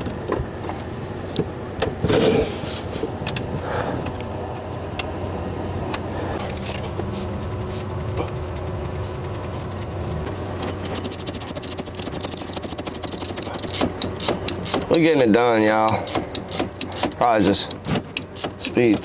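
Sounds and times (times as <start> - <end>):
steady low hum: 0.0 - 19.0
hand tools clicking on metal: 6.4 - 19.0
rapid clicking: 7.4 - 19.0.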